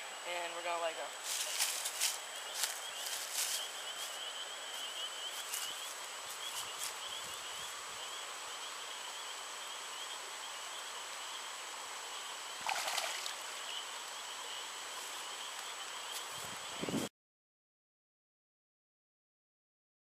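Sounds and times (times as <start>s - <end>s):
outdoor background noise: 0.0s - 17.1s
fish splashing water: 12.6s - 13.4s.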